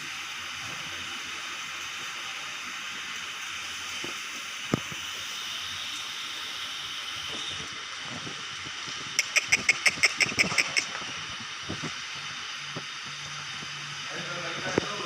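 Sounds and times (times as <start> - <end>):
sharp click: 9.2 - 10.9
steady background hiss: 9.5 - 15.0.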